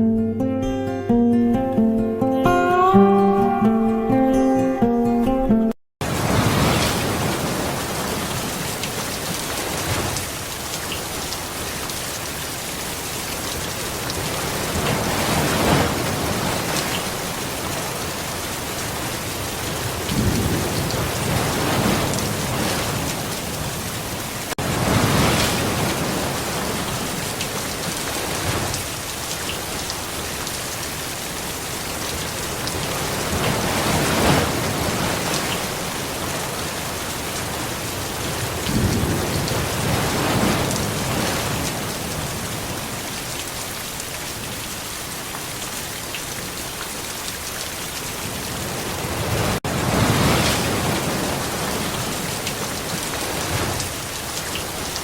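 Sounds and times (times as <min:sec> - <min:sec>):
rain hissing: 0:06.0 - 0:55.0
rolling thunder: 0:19.8 - 0:23.8, 0:38.4 - 0:42.8.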